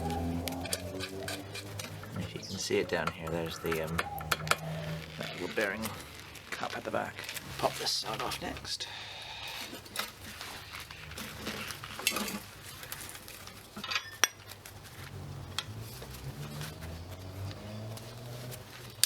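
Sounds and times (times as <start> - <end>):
hand tools clinking on metal: 0.0 - 8.7, 11.1 - 14.7.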